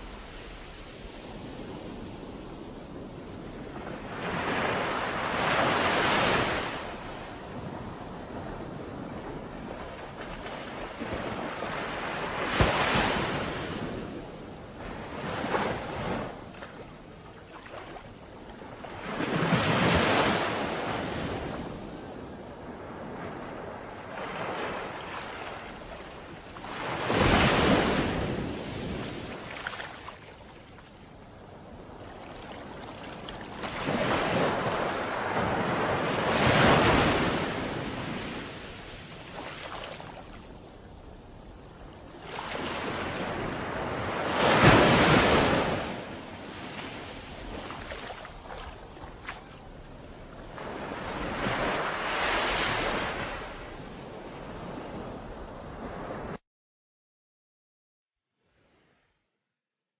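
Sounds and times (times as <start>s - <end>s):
sea waves breaking: 42.2s - 53.6s.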